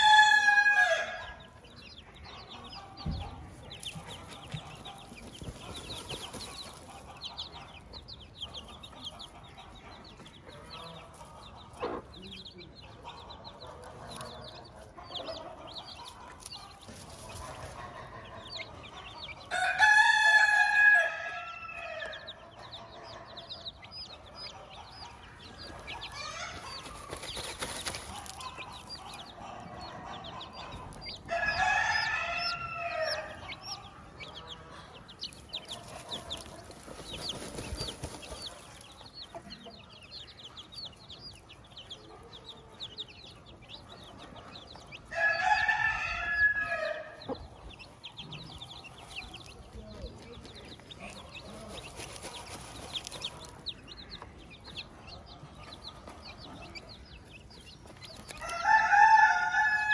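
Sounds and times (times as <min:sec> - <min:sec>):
rooster crowing: 0:00.0 - 0:01.5, 0:19.5 - 0:22.4, 0:31.3 - 0:33.8, 0:45.1 - 0:47.2, 0:58.4 - 0:59.9
chicks peeping: 0:00.0 - 0:59.9
hen clucking: 0:00.0 - 0:59.9.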